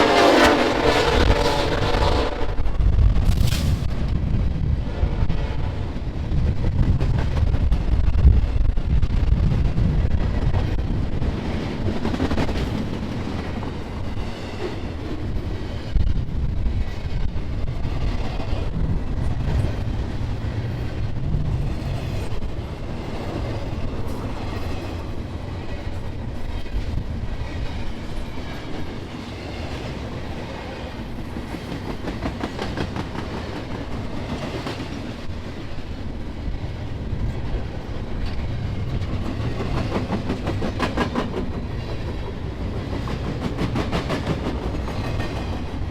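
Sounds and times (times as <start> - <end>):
train rumble: 0.0 - 45.9
train wheels clacking on rails: 10.1 - 45.9.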